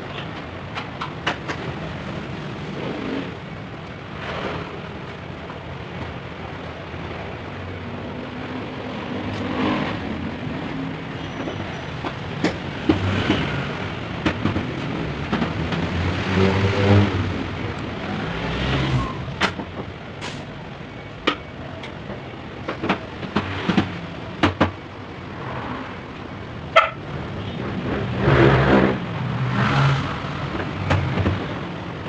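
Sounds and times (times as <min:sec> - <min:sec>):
sharp clicks and knocks: 0:00.1 - 0:01.8, 0:11.4 - 0:16.1, 0:19.3 - 0:20.0, 0:21.2 - 0:24.9, 0:30.5 - 0:31.7.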